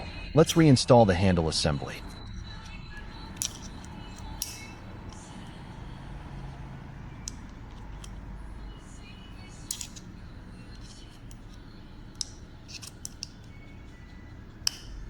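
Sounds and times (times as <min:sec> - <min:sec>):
low steady hum: 0:00.0 - 0:15.0
metal knife parts clicking: 0:02.9 - 0:05.6, 0:07.2 - 0:08.3, 0:09.4 - 0:15.0.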